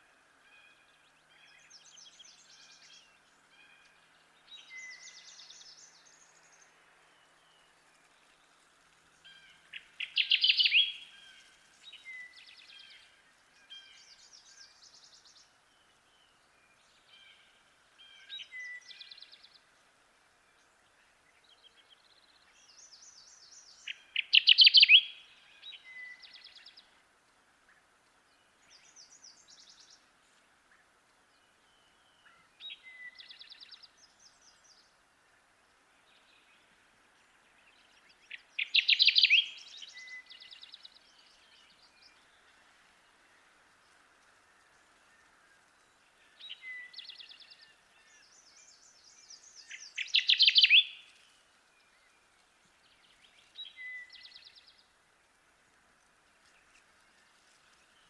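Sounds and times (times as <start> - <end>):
faint bird songs: 0.0 - 58.0
faint steady hiss: 0.0 - 58.0
warbler singing loud short song: 10.0 - 11.1, 37.6 - 42.5, 46.4 - 51.1.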